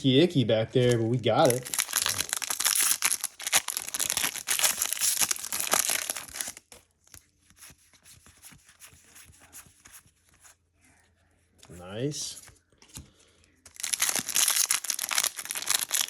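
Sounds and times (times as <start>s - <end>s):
foil wrapper crinkling and tearing: 1.4s - 6.7s, 13.7s - 16.0s.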